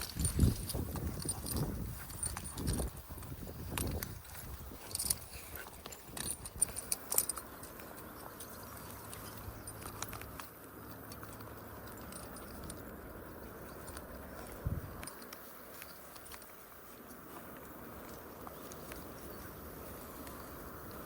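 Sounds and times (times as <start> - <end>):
metallic jingling of dog tags: 0.0 - 16.6
faint steady hum: 0.0 - 21.0.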